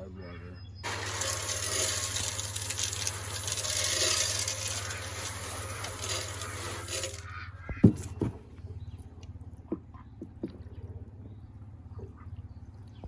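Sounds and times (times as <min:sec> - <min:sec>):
water running from hose: 0:00.8 - 0:07.3.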